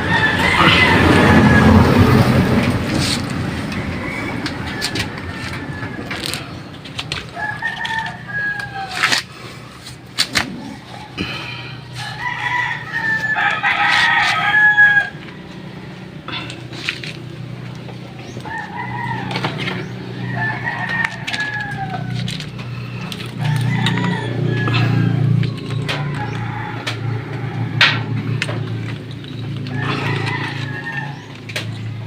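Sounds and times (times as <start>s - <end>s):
rooster crowing: 0.0s - 9.2s, 10.9s - 15.8s, 18.3s - 32.0s
sharp clicks and knocks: 27.8s - 29.8s.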